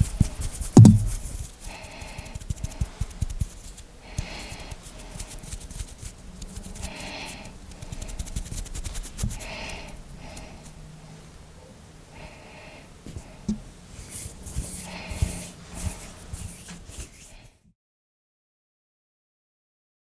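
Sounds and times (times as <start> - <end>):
soft swishing hand rubs: 0.3 - 1.6, 14.0 - 17.6
finger clicks and taps: 0.8 - 1.2
hand thump: 0.8 - 1.3.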